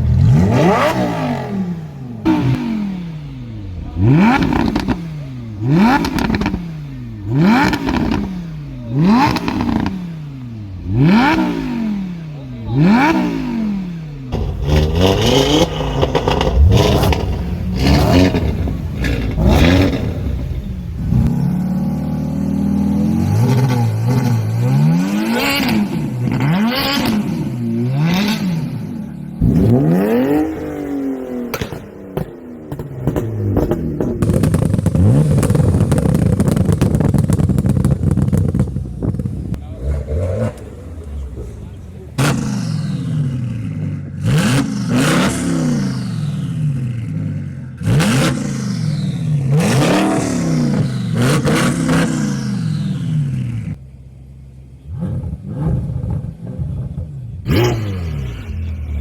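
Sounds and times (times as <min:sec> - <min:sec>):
engine clattering and crackle: 0:00.0 - 0:28.4, 0:29.0 - 0:59.0
engine revving up and down: 0:00.0 - 0:53.8, 0:54.8 - 0:59.0.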